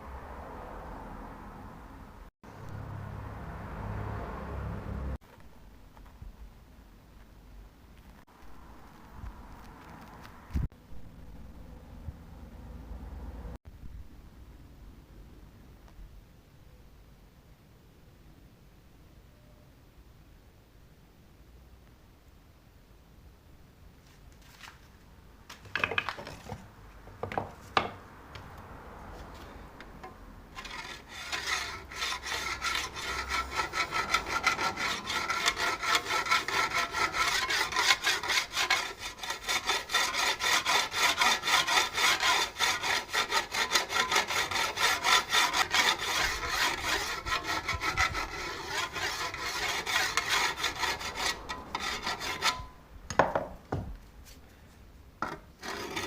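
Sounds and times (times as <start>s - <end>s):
hand tool sawing wood: 30.0s - 52.7s, 55.6s - 56.0s.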